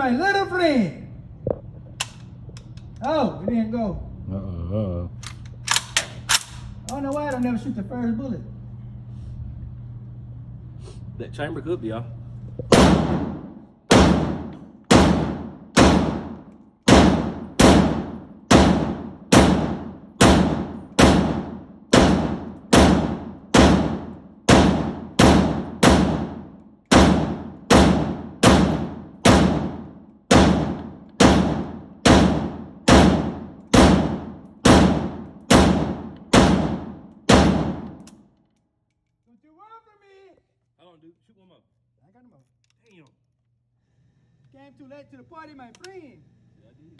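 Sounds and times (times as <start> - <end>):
gunshots with echo: 12.7 - 38.1.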